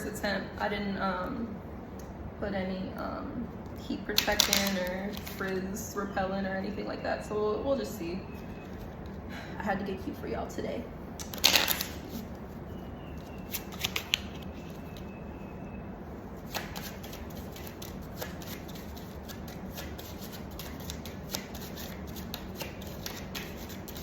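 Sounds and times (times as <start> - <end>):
steady low hum: 0.0 - 24.0
cards being shuffled: 4.2 - 5.4, 11.2 - 12.4, 13.2 - 15.1, 16.5 - 24.0.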